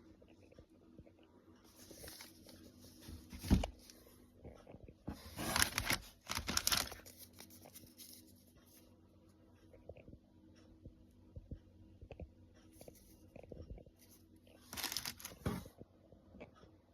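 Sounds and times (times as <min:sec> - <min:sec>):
packaging crinkling: 0:05.2 - 0:08.2, 0:14.7 - 0:15.7.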